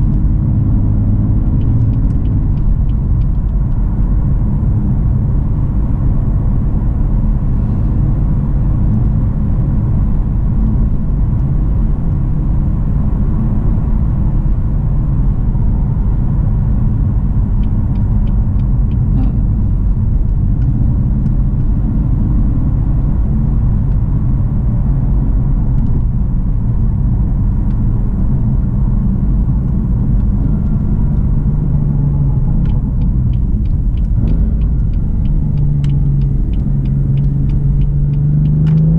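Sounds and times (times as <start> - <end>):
car engine cruising: 0.0 - 38.9.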